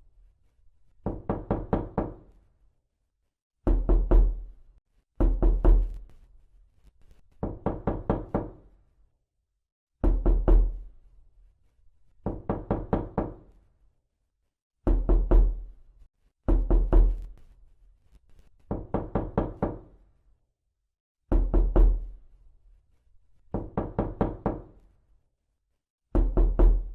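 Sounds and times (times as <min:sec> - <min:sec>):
knocking on a door: 0:01.0 - 0:02.2, 0:03.6 - 0:04.4, 0:05.2 - 0:06.0, 0:07.4 - 0:08.6, 0:10.0 - 0:10.8, 0:12.2 - 0:13.4, 0:14.8 - 0:15.6, 0:16.5 - 0:17.3, 0:18.7 - 0:19.9, 0:21.3 - 0:22.1, 0:23.5 - 0:24.7, 0:26.1 - 0:26.9.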